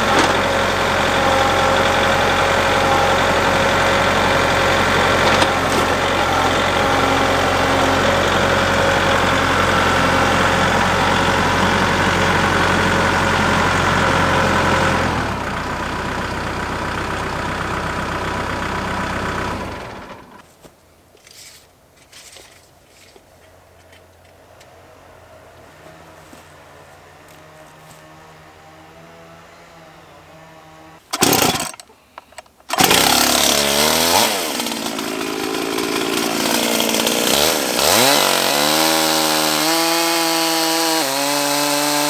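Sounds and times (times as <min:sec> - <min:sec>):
engine running at fast idle: 0:00.0 - 0:20.4, 0:32.7 - 0:42.0.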